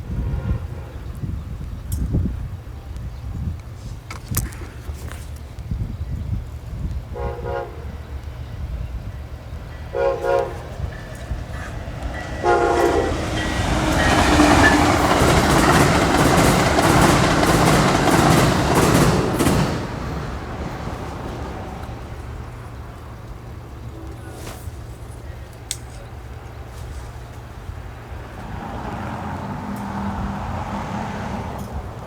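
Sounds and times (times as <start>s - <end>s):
train horn blasts: 0.0s - 1.4s, 7.1s - 8.2s, 9.7s - 15.8s
train passing: 0.0s - 32.0s.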